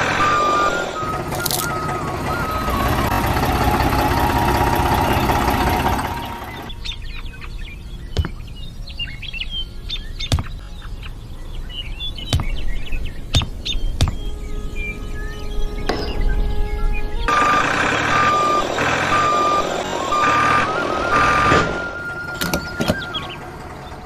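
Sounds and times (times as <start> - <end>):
loud machine running: 0.0 - 6.8, 17.3 - 24.0
birds chirping: 0.0 - 24.0.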